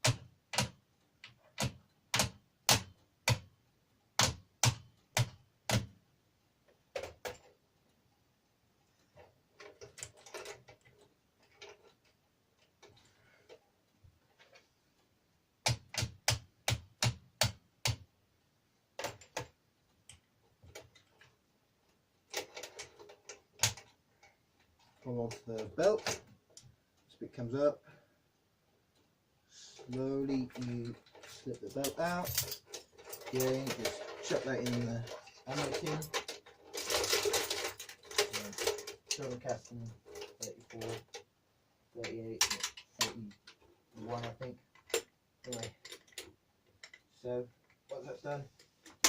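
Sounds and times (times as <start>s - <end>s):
handling and scraping: 18.9s - 41.3s, 41.9s - 49.0s.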